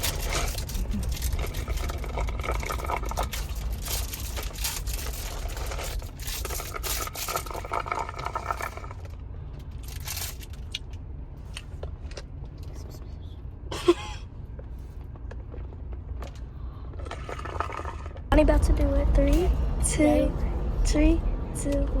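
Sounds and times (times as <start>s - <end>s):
rustling and scraping: 0.0s - 13.4s, 14.3s - 18.3s
steady low rumble: 0.0s - 22.0s.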